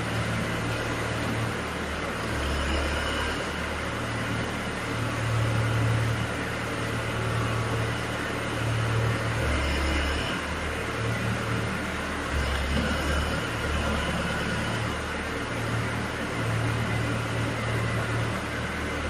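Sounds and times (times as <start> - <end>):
drilling rig engine drone: 0.0 - 19.0.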